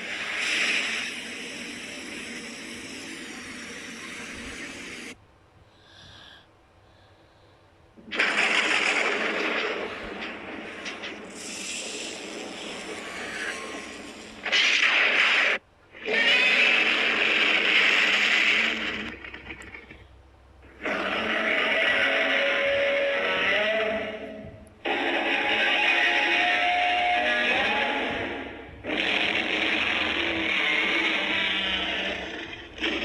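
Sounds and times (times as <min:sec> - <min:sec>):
steady hiss: 0:00.0 - 0:08.4, 0:09.4 - 0:15.6
harsh monster roar: 0:20.8 - 0:24.3, 0:24.9 - 0:33.0.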